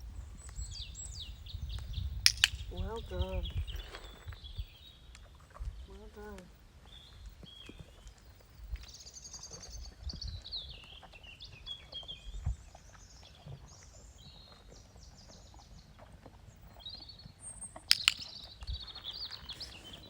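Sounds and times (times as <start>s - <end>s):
small birds singing: 0.0s - 20.0s
horse hooves thudding on ground: 17.9s - 20.0s.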